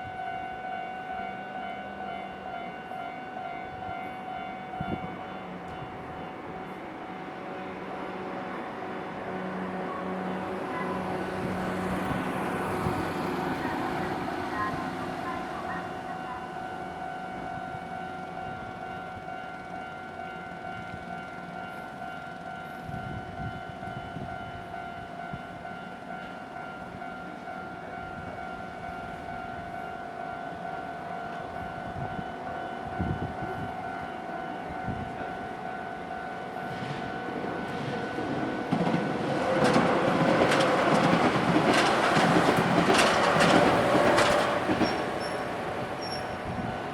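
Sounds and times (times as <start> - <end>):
approaching train: 0.0 - 46.9
train rushing past: 4.7 - 17.7, 27.9 - 46.9.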